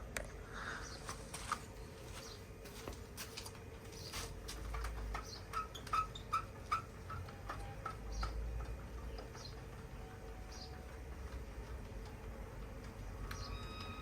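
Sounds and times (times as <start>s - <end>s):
awning gear clicking and squeaking: 4.7s - 9.8s, 13.2s - 14.0s.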